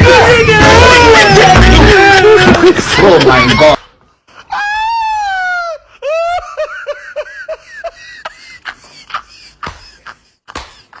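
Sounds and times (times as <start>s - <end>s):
high-pitched laughing: 0.1s - 3.8s.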